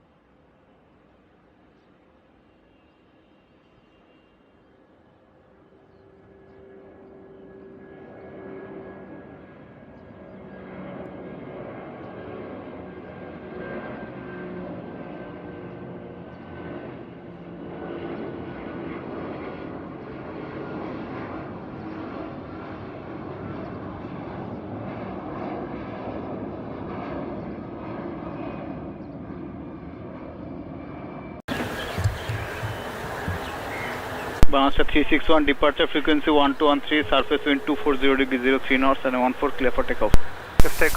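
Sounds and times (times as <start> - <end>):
airliner engines roaring: 31.5 - 40.9.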